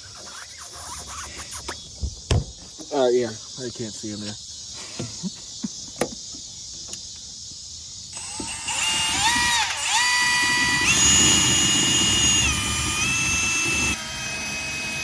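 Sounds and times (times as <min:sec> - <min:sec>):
power drill motor whining: 0:08.2 - 0:15.0.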